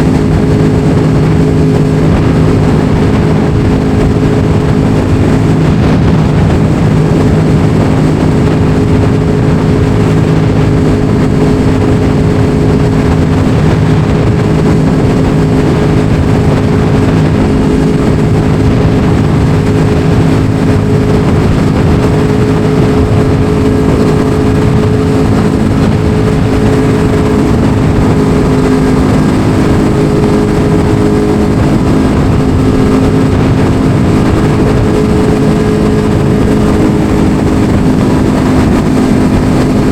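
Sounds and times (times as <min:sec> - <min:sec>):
motorcycle engine at steady revs: 0:00.0 - 0:39.9
wind noise: 0:00.0 - 0:39.9.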